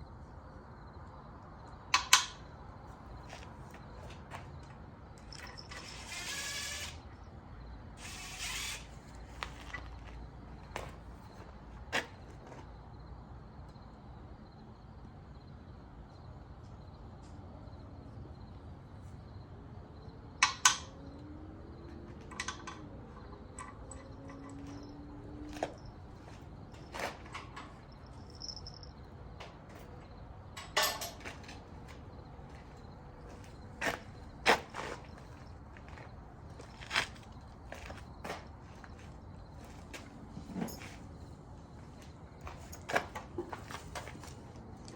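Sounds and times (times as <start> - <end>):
low steady background hum: 0.0 - 44.9
metal clinks and knocks: 5.2 - 5.9, 22.2 - 32.1, 40.4 - 41.2.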